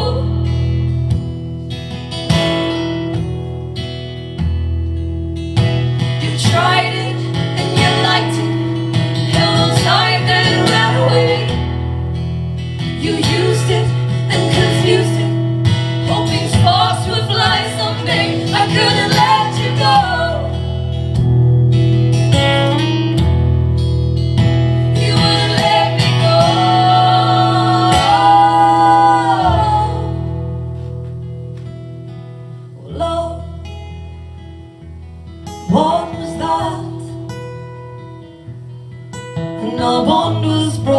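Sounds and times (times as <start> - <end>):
acoustic guitar strumming: 0.0 - 40.9
person singing: 25.0 - 30.3, 39.6 - 40.9.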